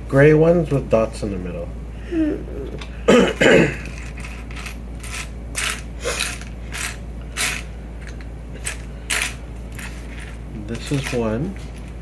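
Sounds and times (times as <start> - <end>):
plastic toy bricks clattering: 3.8 - 11.3.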